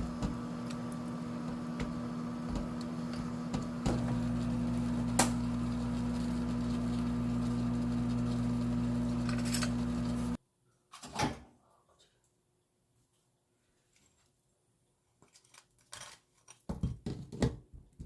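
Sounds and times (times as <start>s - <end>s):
microwave oven humming: 0.0s - 10.4s.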